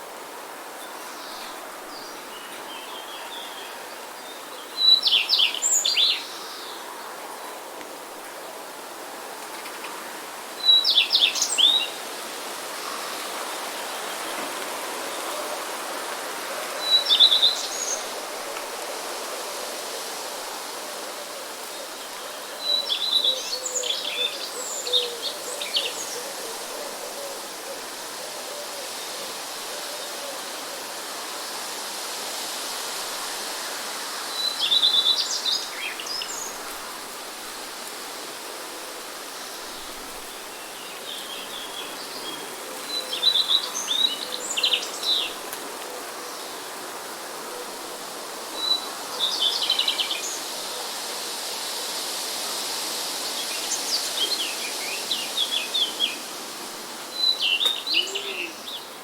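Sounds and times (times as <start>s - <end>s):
wind and rain hiss: 0.0s - 59.0s
songbird chirping: 57.0s - 59.0s.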